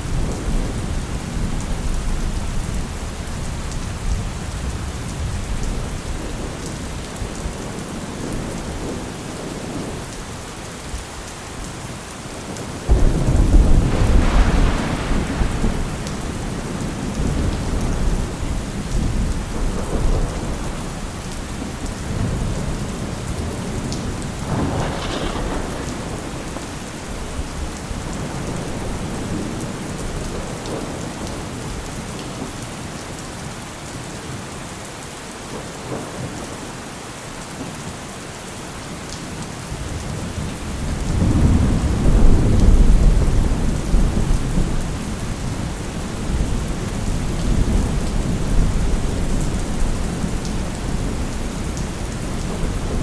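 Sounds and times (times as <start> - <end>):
low rumble of thunder: 0.0 - 10.2, 12.8 - 32.5, 39.7 - 53.0
steady rain: 0.0 - 53.0
thunderclap: 12.9 - 22.8, 23.4 - 31.0, 40.7 - 53.0.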